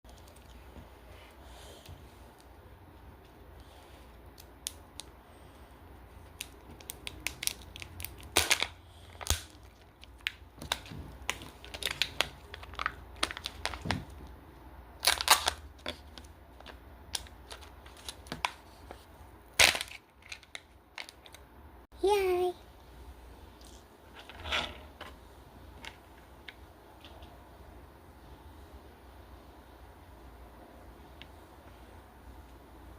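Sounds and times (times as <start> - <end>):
wrapper crinkling and tearing: 6.4 - 14.1, 15.0 - 18.6, 19.6 - 21.4.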